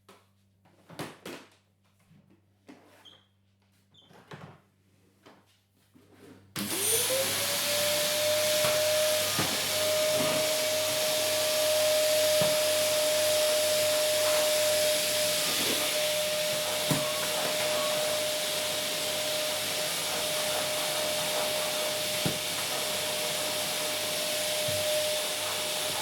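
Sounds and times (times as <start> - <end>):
vacuum cleaner motor whine: 6.6 - 26.0.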